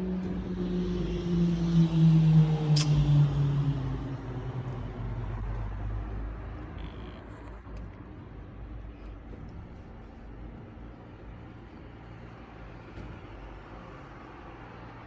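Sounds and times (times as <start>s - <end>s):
passing vehicle hum: 0.0s - 15.0s
sharp click: 2.8s - 3.0s.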